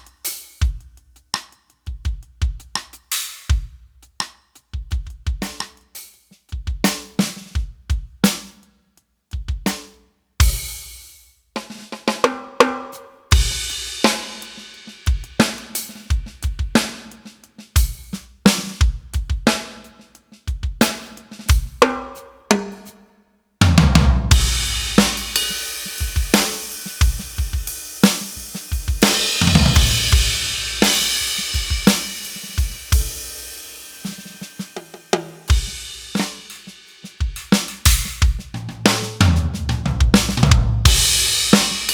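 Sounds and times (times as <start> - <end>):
heavy cymbal wash: 13.3 - 17.0, 24.3 - 41.9
electronic drum kit playing: 23.6 - 41.9.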